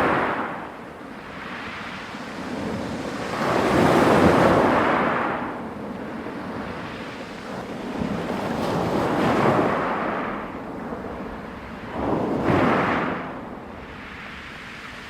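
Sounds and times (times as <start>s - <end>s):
waves breaking on pebble beach: 0.0s - 10.6s, 11.8s - 15.0s.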